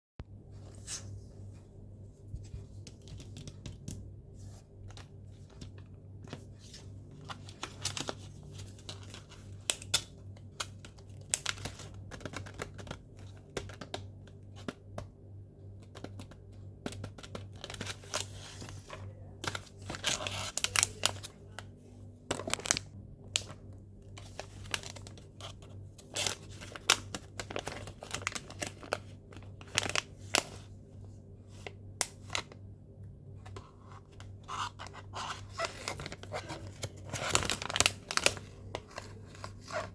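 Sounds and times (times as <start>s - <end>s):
steady low hum: 0.2s - 12.0s, 15.1s - 39.9s
paper and plastic tearing: 34.5s - 39.9s.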